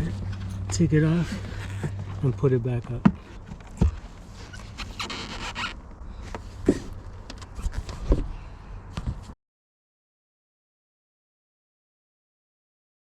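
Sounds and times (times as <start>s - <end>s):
scraping rustle: 0.0s - 9.4s.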